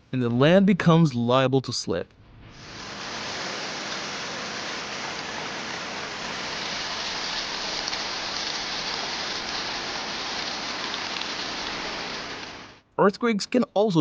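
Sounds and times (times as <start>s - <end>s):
crackles of raindrops: 2.5s - 12.8s
heavy rain hissing: 2.5s - 12.8s.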